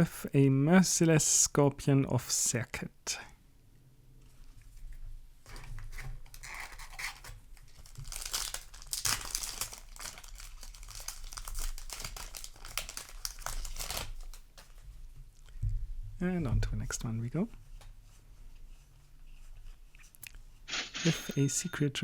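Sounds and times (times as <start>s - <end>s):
foil wrapper crinkling and tearing: 5.9s - 14.8s.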